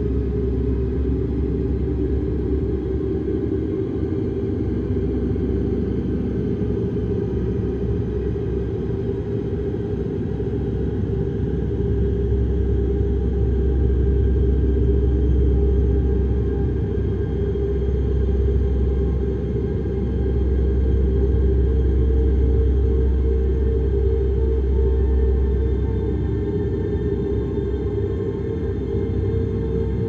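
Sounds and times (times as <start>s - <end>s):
low rumbling drone: 12.0s - 30.0s.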